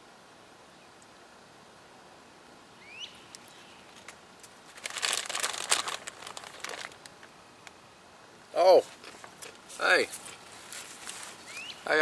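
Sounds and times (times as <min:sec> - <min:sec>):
dry corn leaves rustling: 0:03.5 - 0:07.8, 0:08.6 - 0:12.0.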